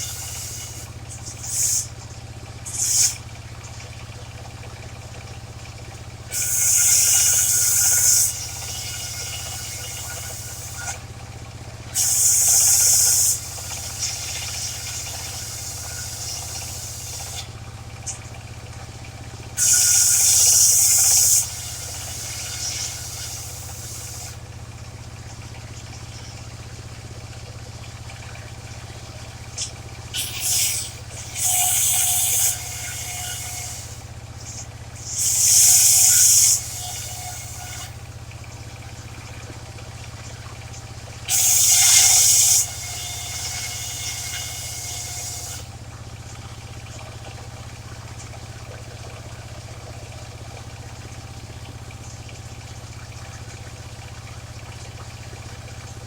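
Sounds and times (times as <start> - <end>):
saw blade cutting timber: 0.0 - 2.0, 2.6 - 3.2, 6.3 - 11.0, 11.9 - 18.2, 19.6 - 24.4, 29.5 - 38.0, 41.3 - 45.7
engine humming: 0.0 - 56.0.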